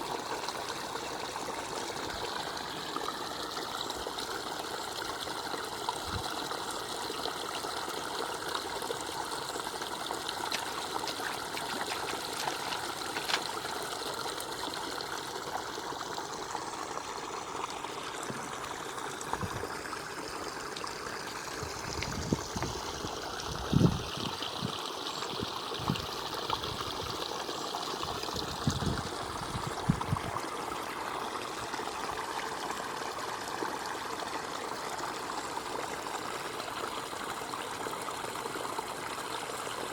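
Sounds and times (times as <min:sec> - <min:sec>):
water trickling: 0:00.0 - 0:39.9.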